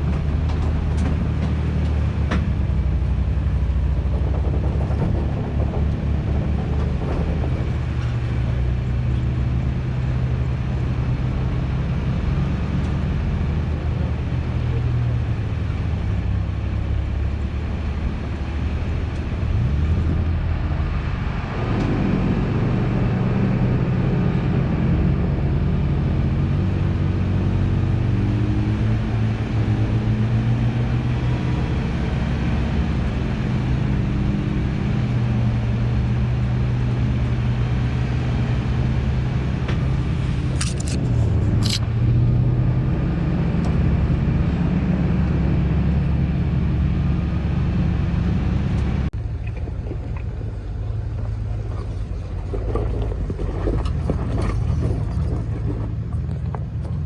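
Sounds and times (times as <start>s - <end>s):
pickup engine hum: 0.0s - 57.0s
tyre and road noise: 0.0s - 57.0s.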